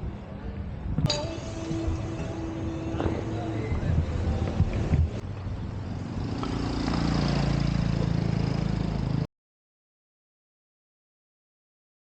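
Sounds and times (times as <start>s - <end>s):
wind buffeting microphone: 0.0s - 5.8s
street noise: 0.0s - 9.3s.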